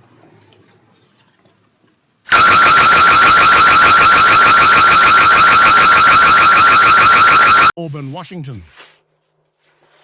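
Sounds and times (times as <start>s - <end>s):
warbling electronic alarm siren: 2.3s - 7.8s.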